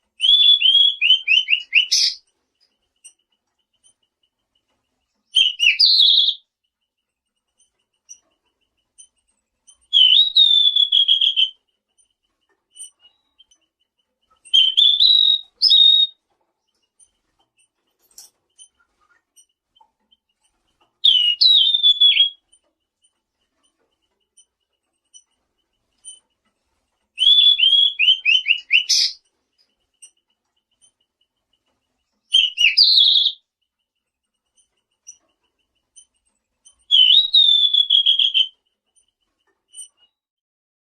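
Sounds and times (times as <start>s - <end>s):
songbird trilled whistles: 0.1s - 2.2s, 5.3s - 6.4s, 9.9s - 11.6s, 14.5s - 16.2s, 21.0s - 22.4s, 27.2s - 29.2s, 32.3s - 33.4s, 36.9s - 38.6s
faint high bird chips: 0.2s - 4.4s, 5.2s - 6.5s, 7.5s - 26.2s, 27.1s - 31.4s, 32.2s - 40.2s.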